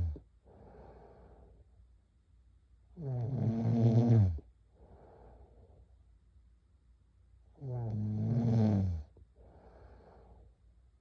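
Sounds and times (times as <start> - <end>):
breathy sleep breathing: 0.0 - 1.6, 4.7 - 5.9, 9.0 - 10.6
girl snoring: 3.0 - 4.4, 7.6 - 9.1.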